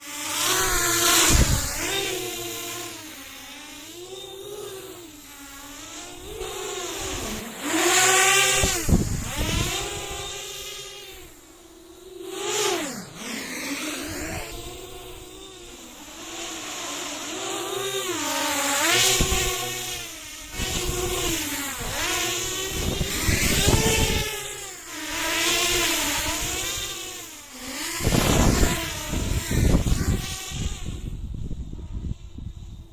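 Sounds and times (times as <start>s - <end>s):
drone propellers whining: 0.0s - 32.9s
quadcopter motors buzzing: 0.0s - 32.9s.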